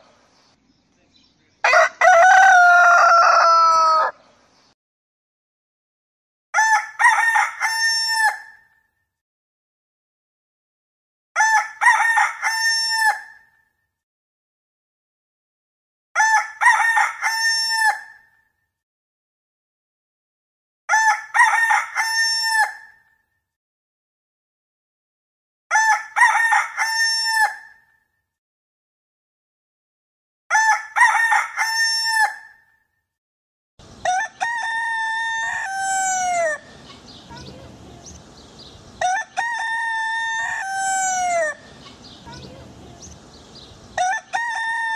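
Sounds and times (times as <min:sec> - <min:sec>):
rooster crowing: 0:01.6 - 0:04.2, 0:06.6 - 0:08.5, 0:11.4 - 0:13.3, 0:16.2 - 0:18.0, 0:25.7 - 0:27.6, 0:30.5 - 0:32.4, 0:34.0 - 0:36.7, 0:39.0 - 0:41.7, 0:44.0 - 0:44.9.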